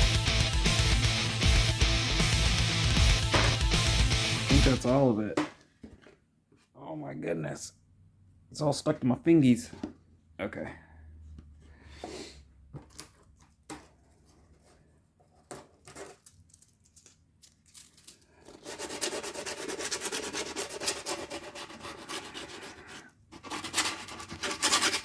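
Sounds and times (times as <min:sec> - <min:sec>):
griptape rasping on skateboard: 0:18.5 - 0:25.0.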